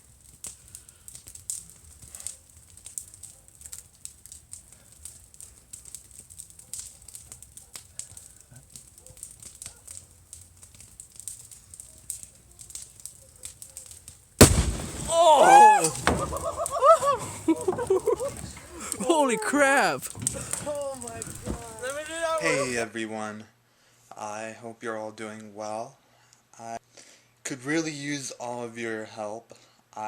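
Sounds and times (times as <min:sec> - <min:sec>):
bonfire crackling and popping: 0:00.0 - 0:22.8.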